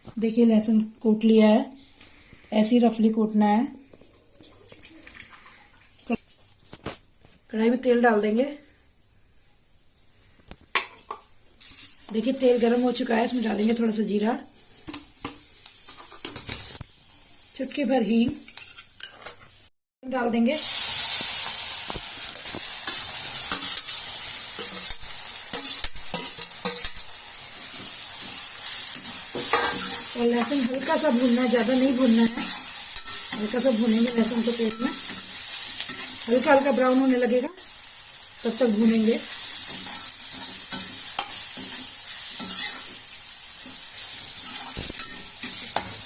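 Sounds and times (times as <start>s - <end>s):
hot oil sizzling: 11.6s - 46.0s
spatula scraping iron pan: 24.6s - 27.0s, 29.0s - 30.5s, 39.7s - 43.0s, 44.4s - 46.0s
spoon scraping and knocking pan: 24.6s - 27.1s, 27.7s - 36.5s, 39.4s - 46.0s.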